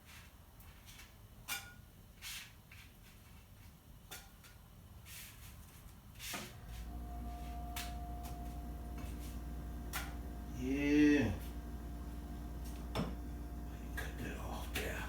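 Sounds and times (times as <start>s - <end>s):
steady electrical hum: 6.5s - 15.0s.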